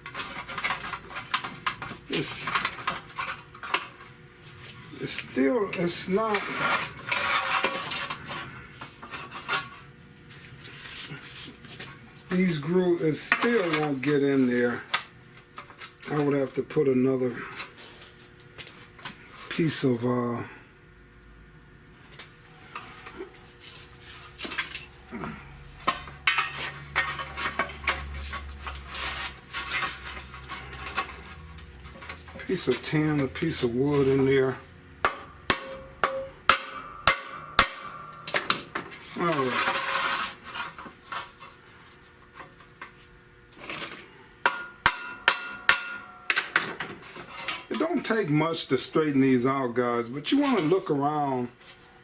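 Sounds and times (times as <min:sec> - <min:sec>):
hammer tapping on metal: 0:35.0 - 0:38.8, 0:44.4 - 0:46.6
metallic clinks and knocks: 0:35.1 - 0:39.5.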